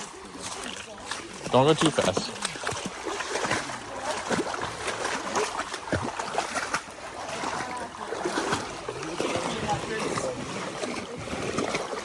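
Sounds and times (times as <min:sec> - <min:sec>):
people wading through water: 0:00.0 - 0:12.0.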